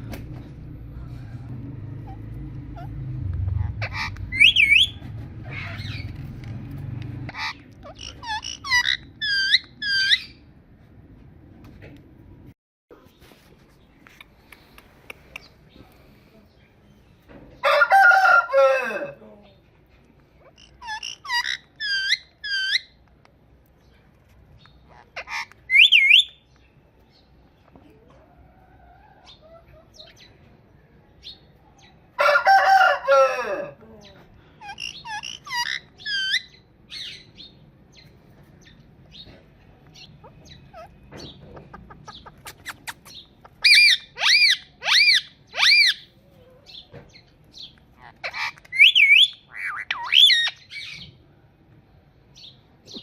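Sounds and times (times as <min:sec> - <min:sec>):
parrot crowing: 0:17.6 - 0:19.2, 0:32.2 - 0:33.8, 0:43.6 - 0:46.1
parrot shrill screeches: 0:43.6 - 0:46.0.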